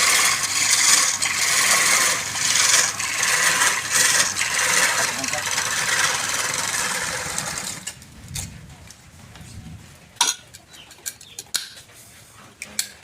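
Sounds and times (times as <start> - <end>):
woodworking machine running: 0.0 - 8.0
clinks of hard objects: 10.2 - 11.9.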